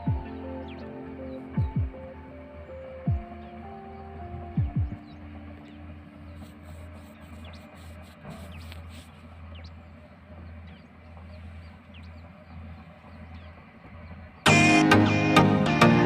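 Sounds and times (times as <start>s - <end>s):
loud electronic music: 0.0s - 7.7s, 14.4s - 16.0s
faint bird chirps: 0.0s - 14.5s
low engine drone: 0.0s - 16.0s.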